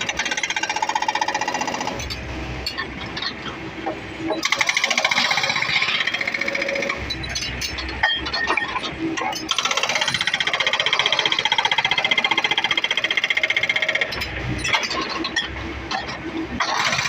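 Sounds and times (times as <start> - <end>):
diesel engine rumbling: 1.1 - 4.5.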